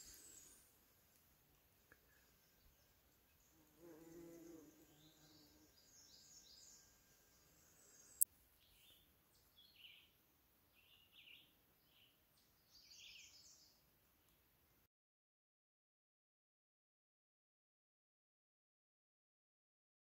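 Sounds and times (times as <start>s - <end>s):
faint birdsong chirping: 0.0s - 14.9s
bee buzzing: 3.7s - 5.8s.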